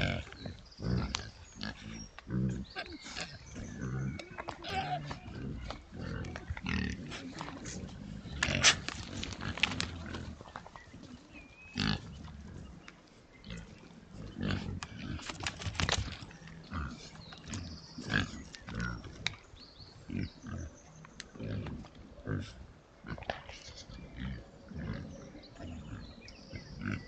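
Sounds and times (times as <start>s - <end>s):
pigs grunting: 0.0s - 19.4s, 20.0s - 27.0s
pigs squealing: 2.4s - 6.9s.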